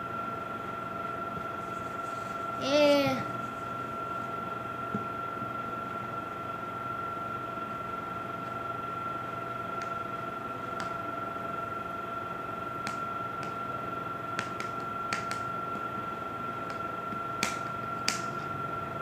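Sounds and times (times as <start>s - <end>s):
steady hum: 0.0s - 19.0s
hands tapping clay on table: 14.4s - 15.8s, 16.7s - 18.3s.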